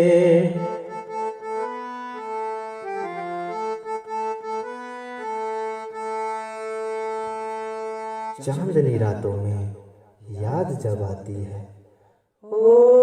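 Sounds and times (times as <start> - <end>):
reed instrument melody: 0.0 - 9.0.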